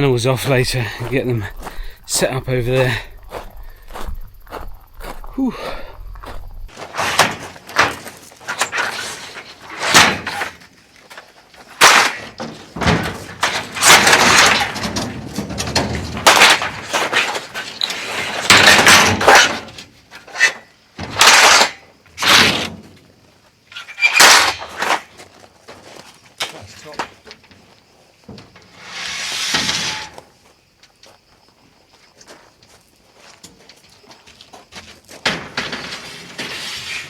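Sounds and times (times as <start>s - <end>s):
scraping or rustling: 5.9s - 10.7s, 28.6s - 30.3s, 35.4s - 37.0s
loud knocks and clattering: 6.8s - 10.6s, 11.8s - 17.5s, 18.4s - 19.7s.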